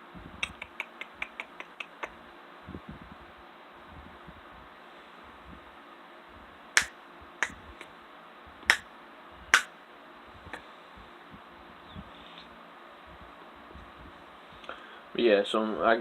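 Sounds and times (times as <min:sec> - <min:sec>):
finger snapping: 0:00.4 - 0:02.1, 0:06.8 - 0:07.9.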